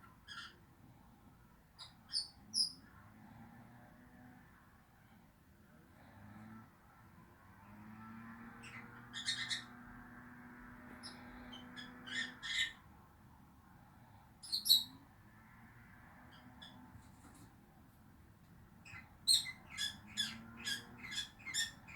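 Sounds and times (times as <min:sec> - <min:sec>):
lovebirds chirping and squawking: 0:00.0 - 0:00.6, 0:01.8 - 0:02.9, 0:08.4 - 0:10.0, 0:10.8 - 0:12.8, 0:14.4 - 0:15.0, 0:16.3 - 0:16.9, 0:18.8 - 0:21.9.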